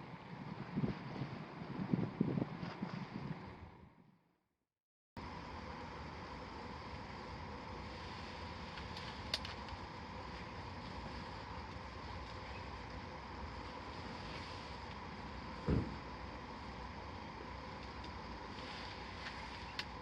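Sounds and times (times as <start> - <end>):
engine-like hum: 0.0 - 4.3, 5.2 - 20.0
faint whine: 5.2 - 20.0.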